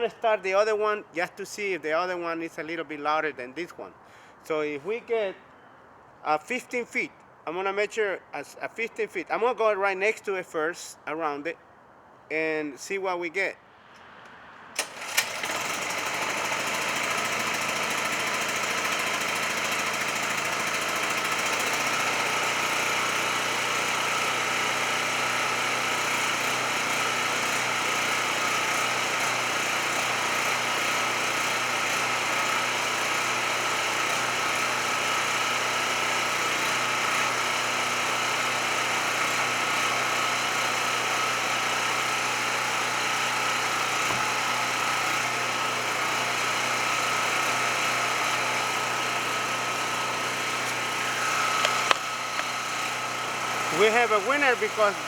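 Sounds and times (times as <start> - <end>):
portable generator engine running: 14.8 - 55.0.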